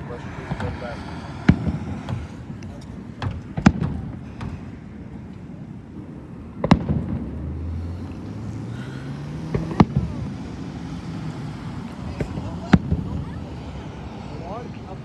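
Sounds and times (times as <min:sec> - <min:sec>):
rumbling echo: 0:00.0 - 0:04.7
fireworks banging: 0:00.0 - 0:04.9, 0:09.4 - 0:14.1.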